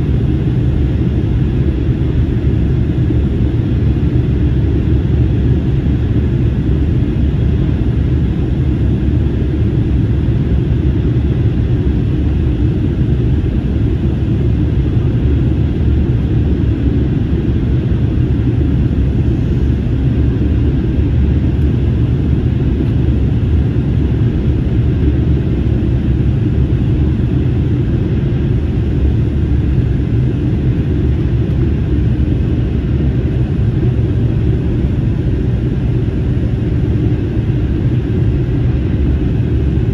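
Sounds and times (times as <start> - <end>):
airliner cabin engine rumble: 0.0 - 39.9.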